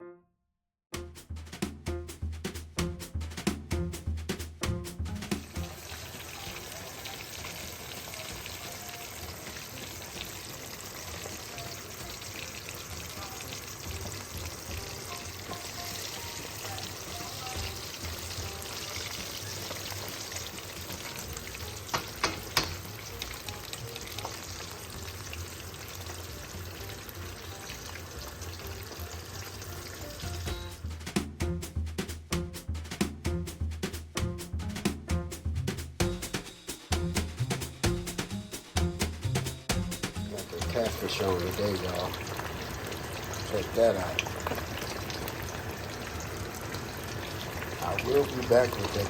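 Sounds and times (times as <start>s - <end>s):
oil popping: 4.7s - 31.6s, 36.0s - 49.0s
fish deep-frying in hot oil: 5.4s - 30.9s, 39.2s - 49.0s.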